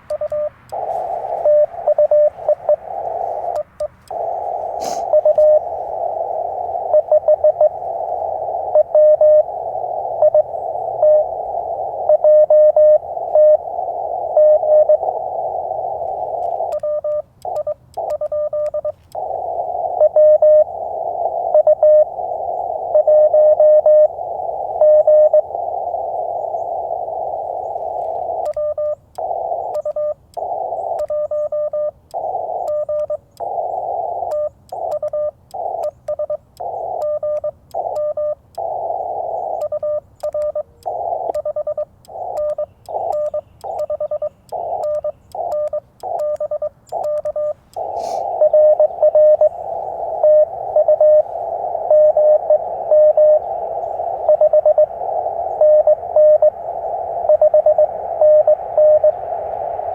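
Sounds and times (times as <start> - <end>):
morse code tone: 0.0 - 59.9
receiver hiss: 0.0 - 59.9.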